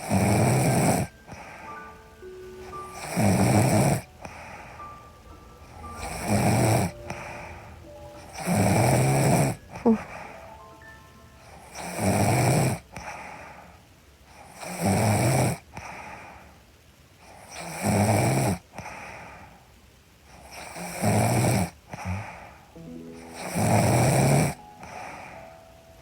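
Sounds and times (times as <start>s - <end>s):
woman snoring: 0.0s - 1.1s, 3.0s - 4.1s, 8.4s - 10.2s, 14.6s - 15.6s, 17.5s - 18.6s, 20.6s - 22.5s
quiet breathing: 0.0s - 14.8s, 15.6s - 17.7s, 18.7s - 20.9s, 21.8s - 26.0s.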